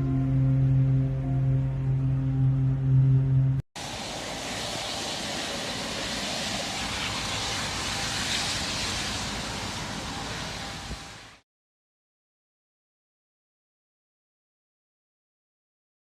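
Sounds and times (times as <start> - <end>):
steady rushing noise: 3.8 - 11.4.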